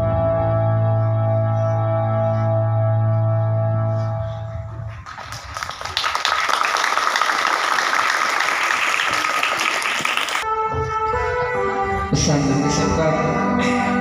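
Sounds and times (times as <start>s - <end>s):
crowd applauding: 5.0s - 10.4s
music with long held notes: 10.4s - 14.0s.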